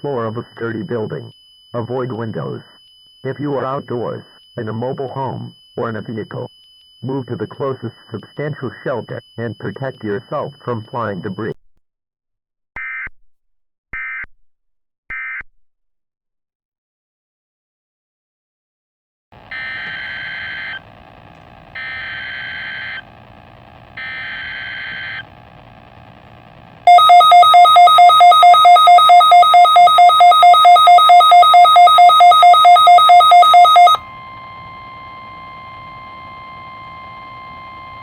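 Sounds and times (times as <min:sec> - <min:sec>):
steady single tone: 0:26.8 - 0:38.0
warbling digital header bursts: 0:26.9 - 0:34.0
pulsing two-pitch alert tone: 0:26.9 - 0:35.0.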